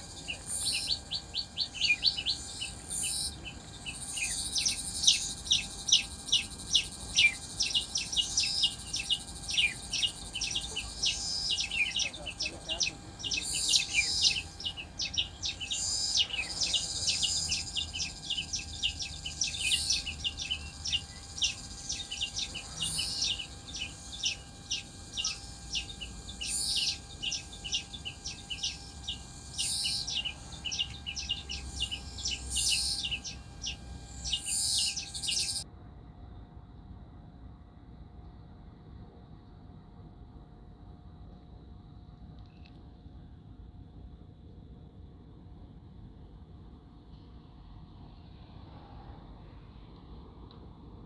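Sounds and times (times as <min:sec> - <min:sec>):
songbirds chirping and singing: 0:00.0 - 0:35.6.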